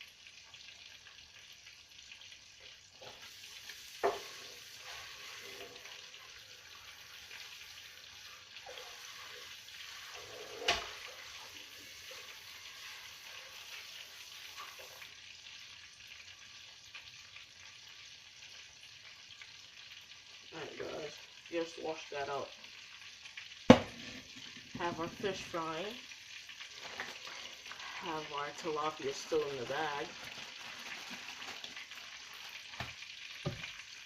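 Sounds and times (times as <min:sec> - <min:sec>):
tap water running: 0:00.0 - 0:19.7, 0:20.3 - 0:34.0
fish frying in oil: 0:00.0 - 0:34.0
sharp knock: 0:23.7 - 0:24.0.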